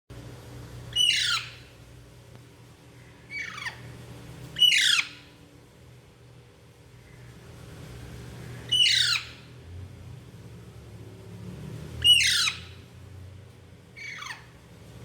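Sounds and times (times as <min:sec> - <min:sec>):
parakeet squawking: 0:00.9 - 0:01.8, 0:03.3 - 0:03.9, 0:04.6 - 0:05.3, 0:08.6 - 0:09.5, 0:12.0 - 0:12.9, 0:14.0 - 0:14.6.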